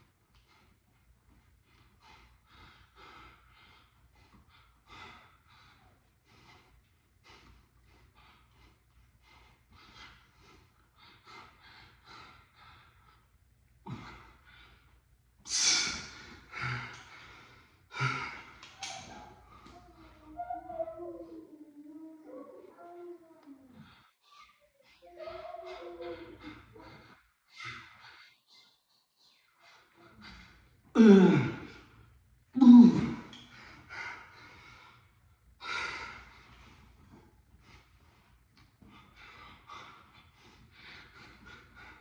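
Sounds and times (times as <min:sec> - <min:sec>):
man breathing hard: 0:01.7 - 0:20.2, 0:33.0 - 0:42.0
man exhaling forcefully: 0:15.5 - 0:16.3.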